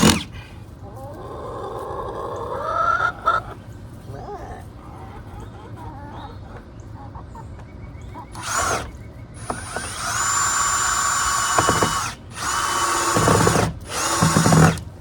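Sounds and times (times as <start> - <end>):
power drill driving screws: 0.0 - 0.3, 8.3 - 14.9.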